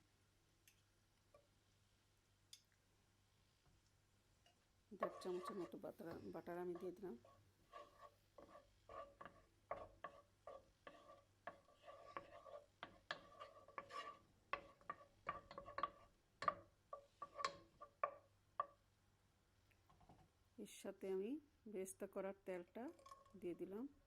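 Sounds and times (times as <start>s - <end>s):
utensil stirring and tapping in pan: 4.4s - 19.0s, 22.9s - 23.4s.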